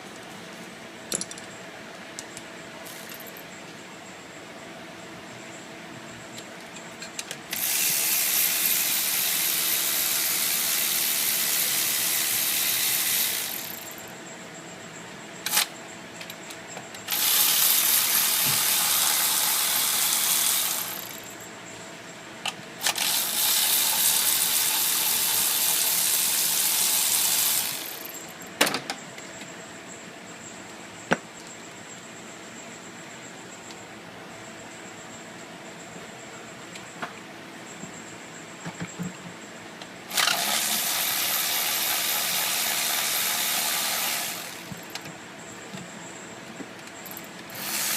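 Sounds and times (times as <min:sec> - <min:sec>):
tools clicking and knocking: 0:01.1 - 0:01.6.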